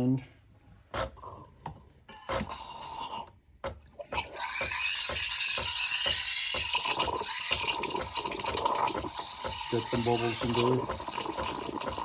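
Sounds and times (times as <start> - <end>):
pump ticking: 3.6 - 12.0.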